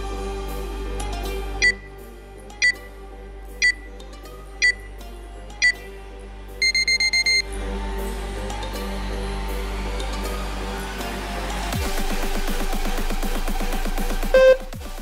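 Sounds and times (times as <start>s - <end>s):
electronic timer beeps: 1.6s - 2.0s, 2.6s - 2.9s, 3.6s - 3.8s, 4.6s - 4.9s, 5.6s - 5.8s, 6.6s - 7.4s, 14.4s - 14.7s
electronic music: 6.6s - 7.4s, 11.0s - 15.0s.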